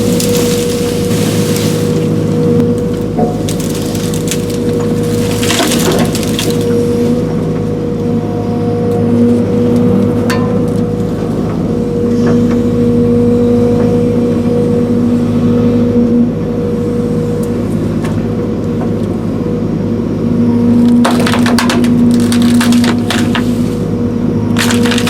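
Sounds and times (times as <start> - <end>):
wood cracking and splintering: 0.0 - 7.4, 21.0 - 23.6, 24.5 - 25.0
excavator diesel engine running: 0.0 - 25.0.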